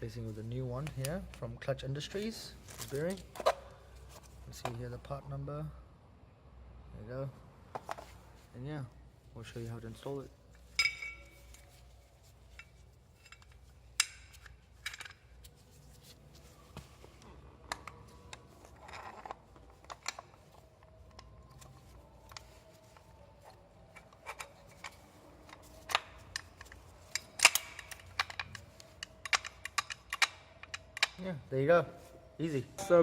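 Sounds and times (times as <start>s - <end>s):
metallic clicks and knocks: 24.0s - 31.2s.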